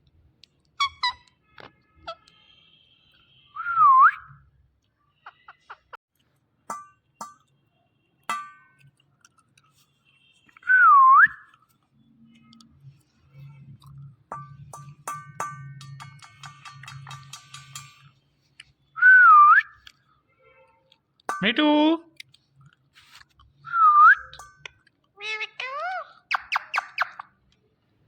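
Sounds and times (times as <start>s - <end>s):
parrot clicks and chirps: 24.2s - 27.4s.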